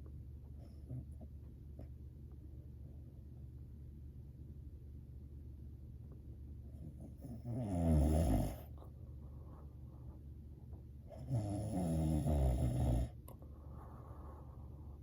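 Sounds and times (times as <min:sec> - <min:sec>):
person snoring: 0:07.2 - 0:08.7, 0:11.2 - 0:13.2
faint breath: 0:13.4 - 0:15.0.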